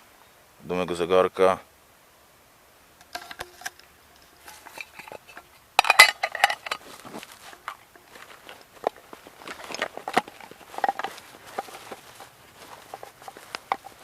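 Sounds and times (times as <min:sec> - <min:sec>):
small metal items clinking: 0:03.0 - 0:14.0.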